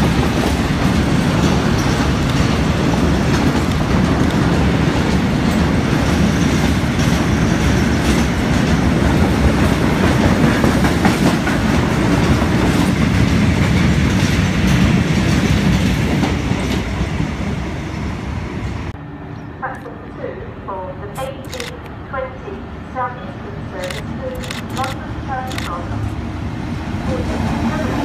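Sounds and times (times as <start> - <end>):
freight train wagons rumbling: 0.0 - 19.0.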